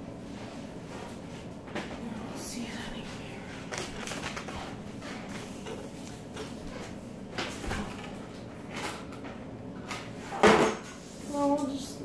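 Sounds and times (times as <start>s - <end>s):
objects knocked and rustled by hand: 3.7s - 11.0s.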